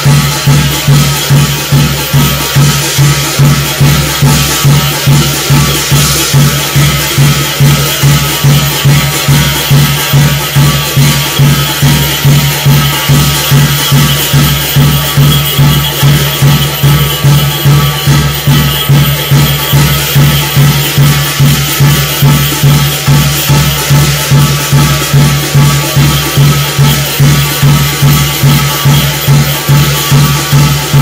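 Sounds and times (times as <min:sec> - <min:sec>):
bright jingling: 0:00.0 - 0:31.0
percussion pulsing evenly: 0:00.0 - 0:31.0.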